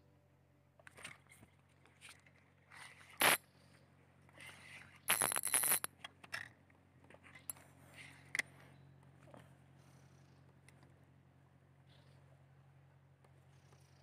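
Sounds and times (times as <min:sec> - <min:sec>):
short scrape: 0:03.1 - 0:03.4.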